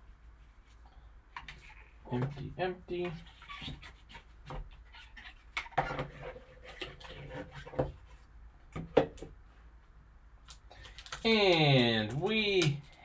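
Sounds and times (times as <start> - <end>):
packaging clicks and rustles: 10.5 - 13.0.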